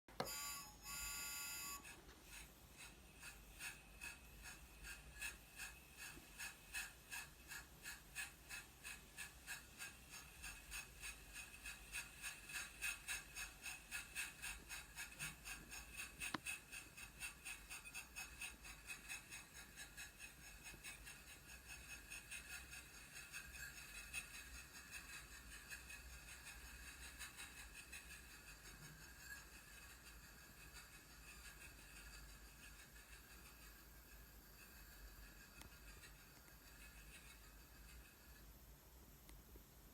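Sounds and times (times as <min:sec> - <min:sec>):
short electronic tone: 0:00.2 - 0:01.8
steam-train chugging sound effect: 0:00.2 - 0:38.8.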